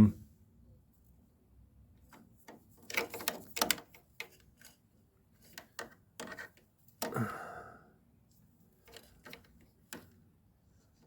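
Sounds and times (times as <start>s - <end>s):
connectors clicking and rattling: 2.0s - 7.2s, 8.4s - 10.3s.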